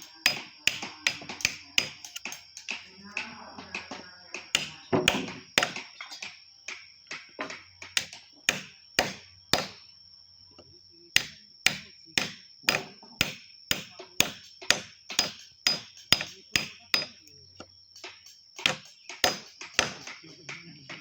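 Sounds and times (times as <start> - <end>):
mallet striking chisel: 0.1 - 2.8, 4.5 - 5.8, 8.0 - 9.8, 11.2 - 20.6.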